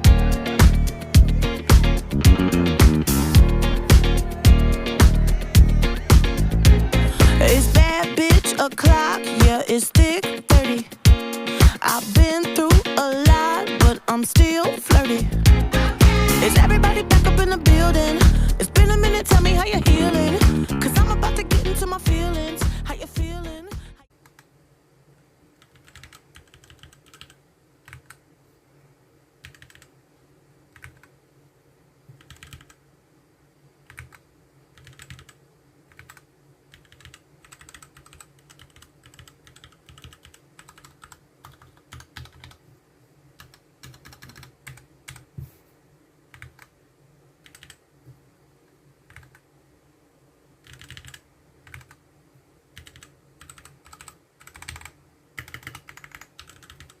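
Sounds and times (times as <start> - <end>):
mechanical keyboard typing: 25.6 - 28.2, 29.4 - 29.9, 30.7 - 31.1, 32.1 - 32.8, 33.8 - 42.6, 43.4 - 45.3, 46.3 - 46.7, 47.4 - 47.8, 49.1 - 49.4, 50.6 - 52.0, 52.8 - 57.0.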